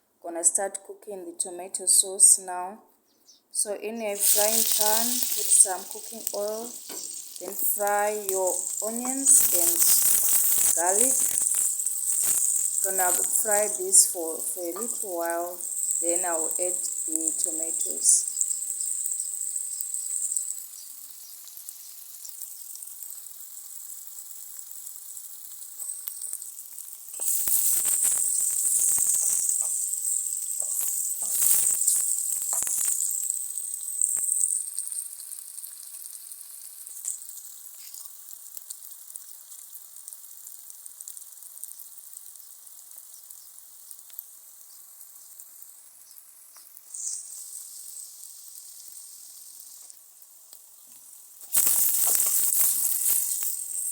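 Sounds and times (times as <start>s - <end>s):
onions sizzling in oil: 3.6s - 53.9s
scraping stirring in pan: 4.2s - 17.1s, 27.2s - 33.2s, 51.5s - 53.9s.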